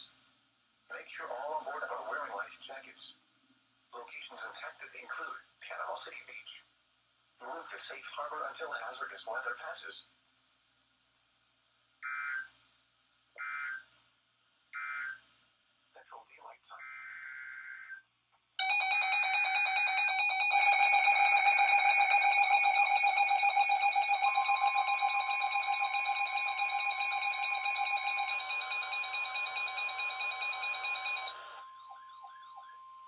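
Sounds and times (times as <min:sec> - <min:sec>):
steady single warning tone: 0:18.6 - 0:31.4
warbling electronic alarm: 0:18.6 - 0:33.0
buzzy digital data tones: 0:20.1 - 0:31.3.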